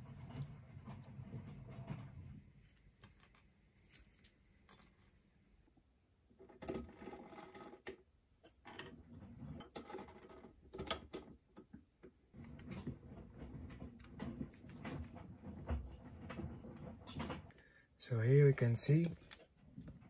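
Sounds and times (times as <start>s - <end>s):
small metal parts clicking: 2.8s - 4.9s.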